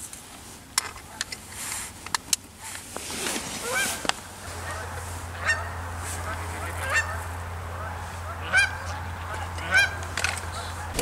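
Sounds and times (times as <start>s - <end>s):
geese honking: 3.6s - 11.0s.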